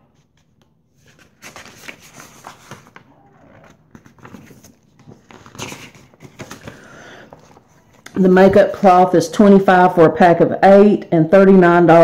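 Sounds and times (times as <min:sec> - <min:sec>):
packaging and paper rustling: 0:00.2 - 0:08.0.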